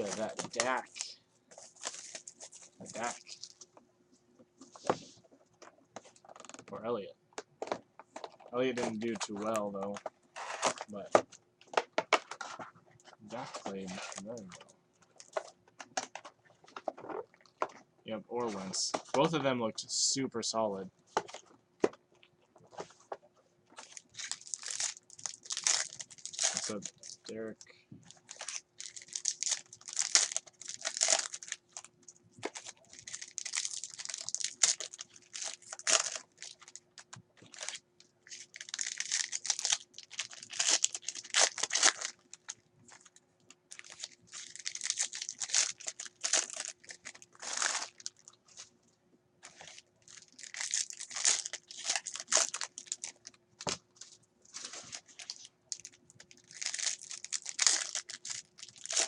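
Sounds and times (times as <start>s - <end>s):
foil wrappers tearing and crinkling: 0.0s - 1.1s, 23.8s - 27.3s, 28.2s - 43.1s, 43.7s - 48.3s, 49.4s - 53.8s, 54.5s - 59.0s.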